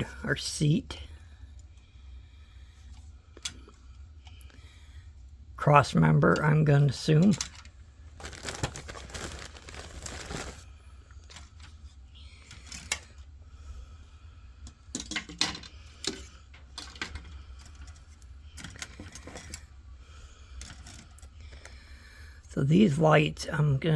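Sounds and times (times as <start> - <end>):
plastic crinkling rustle: 7.2 - 11.7
plastic parts clicking and rattling: 7.3 - 10.6, 11.2 - 11.8, 12.4 - 13.2, 14.6 - 19.7, 20.6 - 21.8.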